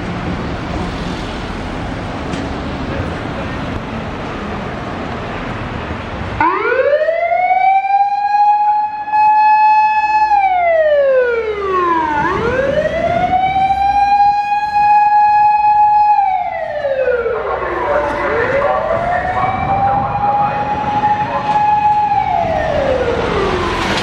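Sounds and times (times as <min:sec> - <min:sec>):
road noise: 0:00.0 - 0:24.0
fire engine siren wailing: 0:06.4 - 0:24.0.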